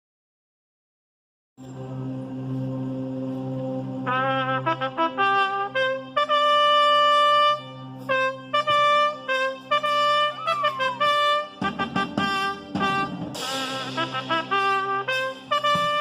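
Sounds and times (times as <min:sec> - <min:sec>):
trumpet fanfare: 0:04.1 - 0:16.0
held chord: 0:09.0 - 0:14.0.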